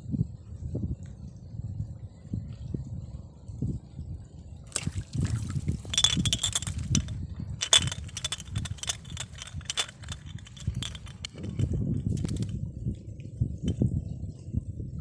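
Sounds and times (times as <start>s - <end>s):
rustling: 4.7s - 12.5s.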